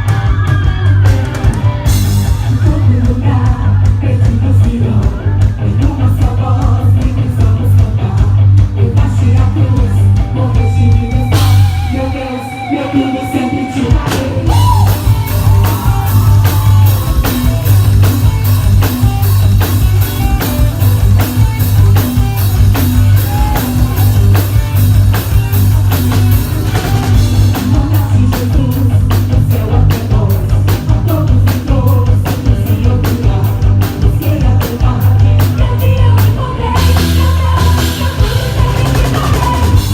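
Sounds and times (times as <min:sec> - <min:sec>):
rock band playing: 0:00.0 - 0:39.9
person singing: 0:00.1 - 0:18.1, 0:26.7 - 0:39.9.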